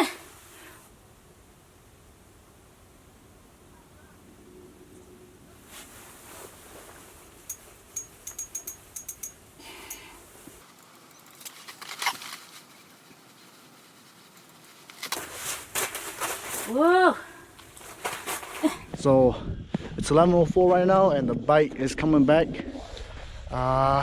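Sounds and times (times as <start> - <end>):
rustling: 5.0 - 18.9.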